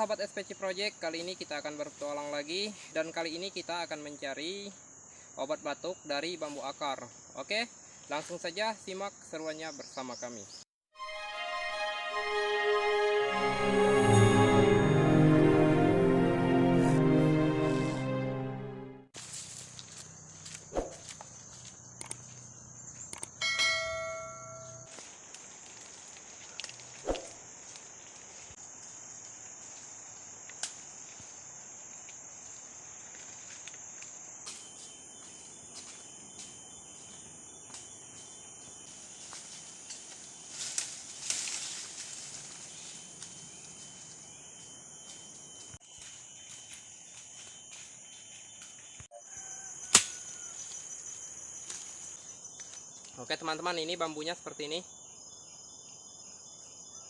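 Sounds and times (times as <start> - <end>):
insects droning: 0.0 - 10.6, 19.2 - 57.0
higher insect tone: 0.0 - 18.0, 19.2 - 25.2, 26.9 - 57.0
footsteps in undergrowth: 1.1 - 3.2, 19.1 - 49.1, 50.4 - 53.2.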